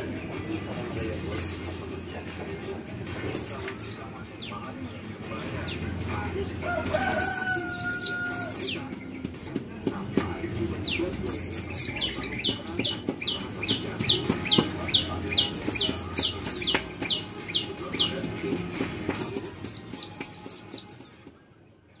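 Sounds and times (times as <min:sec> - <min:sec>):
bird giving rapid high calls: 0:06.9 - 0:08.9, 0:10.8 - 0:18.1.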